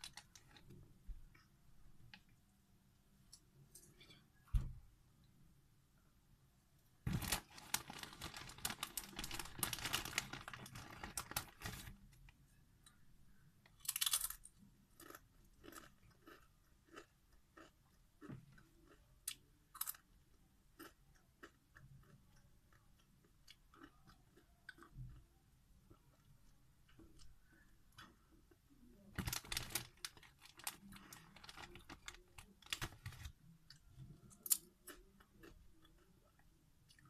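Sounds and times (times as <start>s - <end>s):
crunching of chips being chewed: 13.8s - 20.1s, 29.2s - 33.4s.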